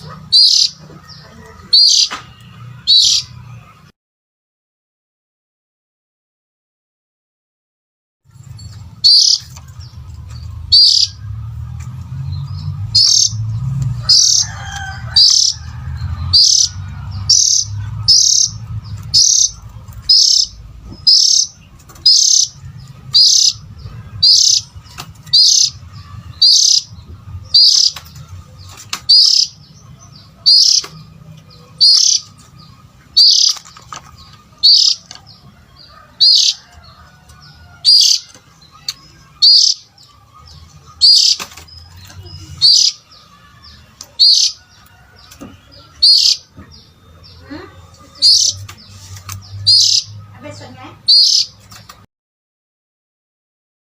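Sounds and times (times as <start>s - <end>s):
bird giving sharp high calls: 0.0s - 0.8s, 1.7s - 2.2s, 2.8s - 3.4s, 9.0s - 9.4s, 10.7s - 11.2s, 12.9s - 13.4s, 14.1s - 14.4s, 15.2s - 15.6s, 16.3s - 16.7s, 17.3s - 23.6s, 24.2s - 24.7s, 25.3s - 26.9s, 27.5s - 28.0s, 29.1s - 29.6s, 30.4s - 31.0s, 31.8s - 32.3s, 33.2s - 33.6s, 34.6s - 35.2s, 36.2s - 36.7s, 37.8s - 39.9s, 41.0s - 41.6s, 42.6s - 43.1s, 44.2s - 44.6s, 46.0s - 46.5s, 48.2s - 48.6s, 49.7s - 50.2s, 51.0s - 51.6s.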